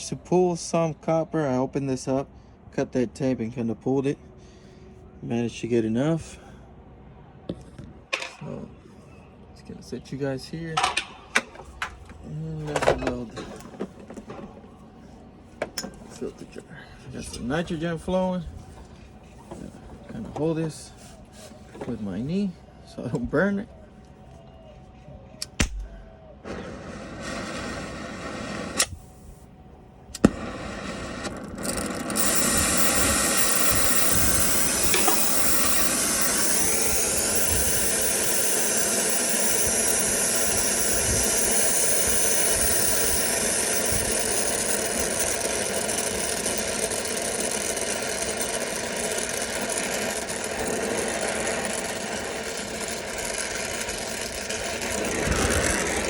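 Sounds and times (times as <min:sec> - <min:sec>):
torch flame hissing: 0:26.4 - 0:29.4, 0:30.2 - 0:56.0
sharp clicks: 0:31.6 - 0:56.0.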